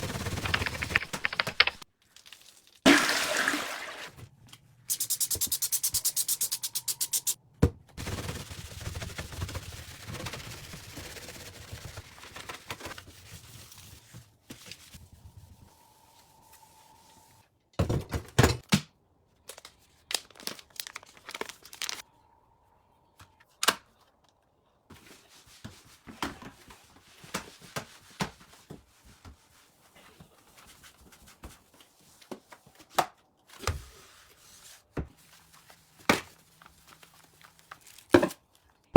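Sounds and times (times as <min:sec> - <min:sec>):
fast run of clicks: 0:00.0 - 0:01.8
rustling and scraping: 0:00.0 - 0:01.9.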